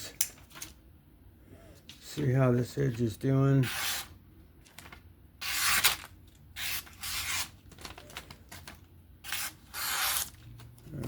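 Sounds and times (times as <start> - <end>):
knife slicing through paper: 9.2 - 10.3.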